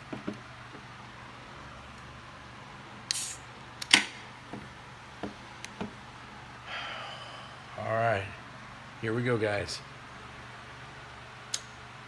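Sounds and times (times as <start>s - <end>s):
beer can fizzing hiss: 3.1s - 3.5s.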